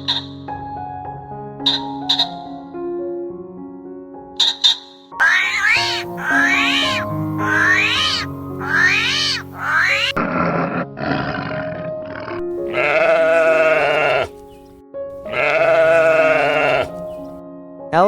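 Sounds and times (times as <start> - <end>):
background music: 3.7 - 18.0
animal calls: 5.2 - 10.2, 12.6 - 17.4.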